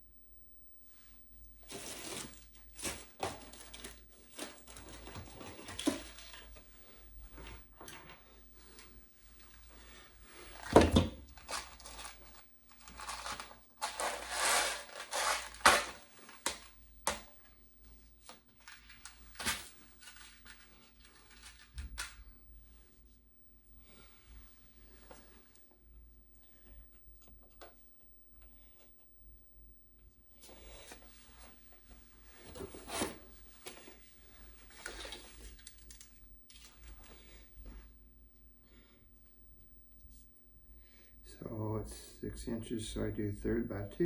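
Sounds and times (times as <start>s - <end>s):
rustling and crinkling materials: 1.6s - 17.2s, 18.2s - 22.2s, 30.4s - 37.9s.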